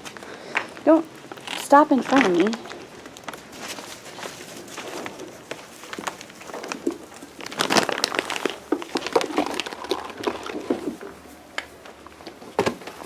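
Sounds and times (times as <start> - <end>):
crinkling and crunching: 0.0 - 13.0.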